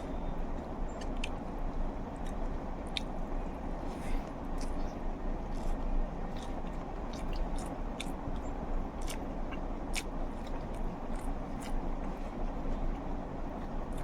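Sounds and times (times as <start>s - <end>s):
low background hum: 0.0s - 14.0s
person chewing food: 4.0s - 12.6s.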